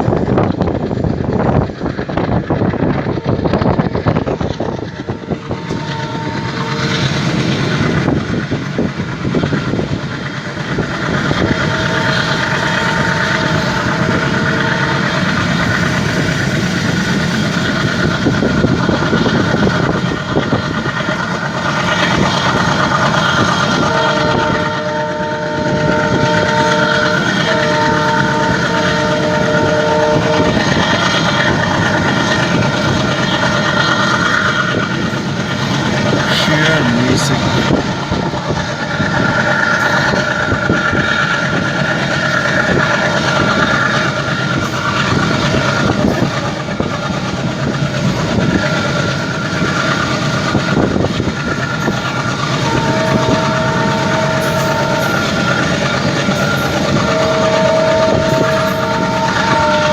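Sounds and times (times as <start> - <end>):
diesel locomotive engine chugging: 0.0 - 59.9
locomotive horn blasts: 5.0 - 8.2, 11.3 - 15.8, 23.3 - 32.8, 51.7 - 59.9.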